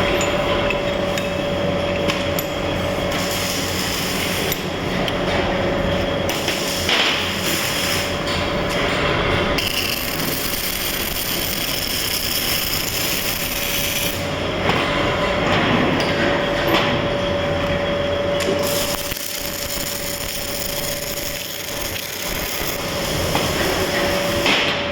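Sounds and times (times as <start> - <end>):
welding arc crackling: 3.1 - 4.5, 6.3 - 14.3, 18.4 - 24.4.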